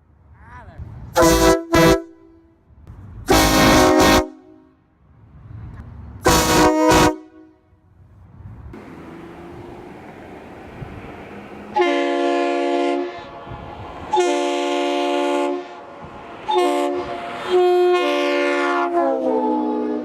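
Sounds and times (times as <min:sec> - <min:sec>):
locomotive air horn blasts: 0:01.2 - 0:02.5, 0:03.2 - 0:04.8, 0:06.2 - 0:07.8, 0:11.7 - 0:13.4, 0:14.1 - 0:20.0
train rumble: 0:02.6 - 0:20.0.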